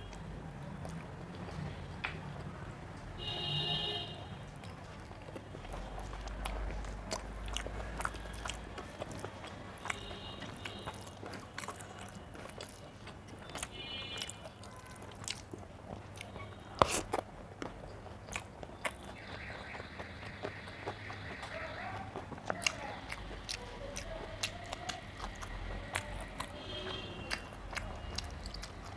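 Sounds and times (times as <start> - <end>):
person chewing food: 0.0 - 28.9
wet mouth clicks and smacks: 16.3 - 19.8, 27.2 - 28.9.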